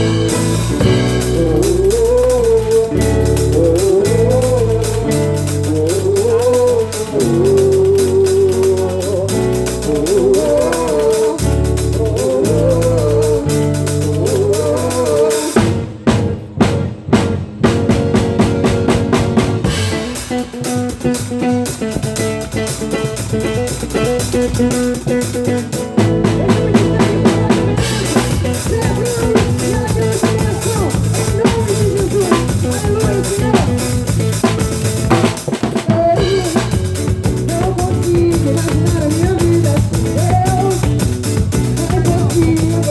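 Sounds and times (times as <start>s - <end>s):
live band music: 0.0s - 42.9s.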